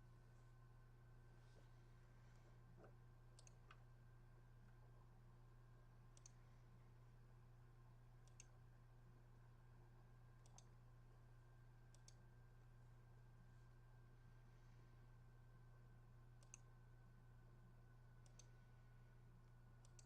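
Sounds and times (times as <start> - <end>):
computer mouse clicks: 2.8 - 3.8, 6.1 - 6.4, 8.2 - 8.6, 10.4 - 10.8, 11.9 - 12.2, 16.4 - 16.7, 18.2 - 18.6, 19.8 - 20.0.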